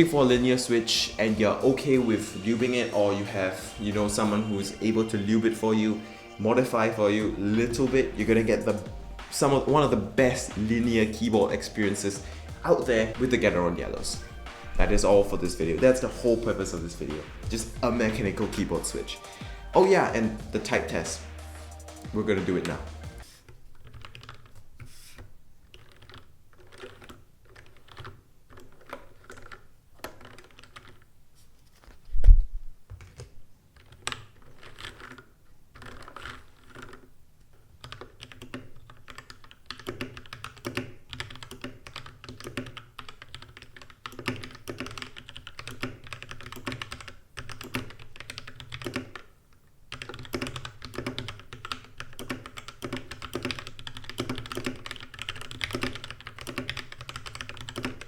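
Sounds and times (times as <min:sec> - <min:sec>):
mechanical keyboard typing: 0:23.7 - 0:31.1, 0:33.0 - 0:49.3, 0:49.9 - 0:58.0.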